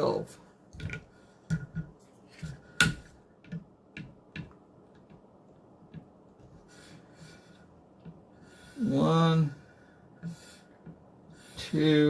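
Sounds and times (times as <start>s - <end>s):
light clicks and knocks: 0.7s - 6.6s.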